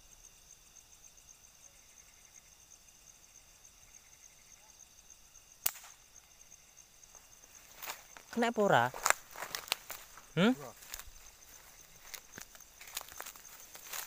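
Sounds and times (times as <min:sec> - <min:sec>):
insects chirring: 0:00.0 - 0:14.0
gunshot crack: 0:05.6 - 0:06.0.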